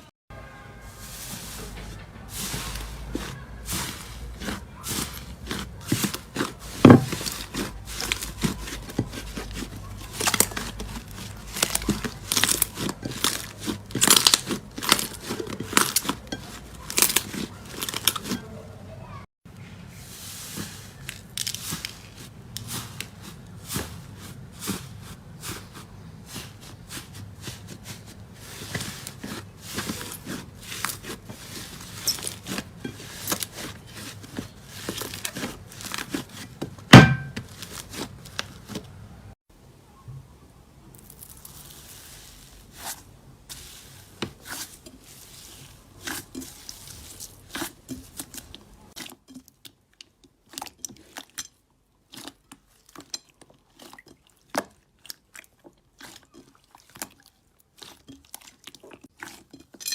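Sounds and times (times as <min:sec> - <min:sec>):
slime crackling and popping: 0:02.5 - 0:18.4.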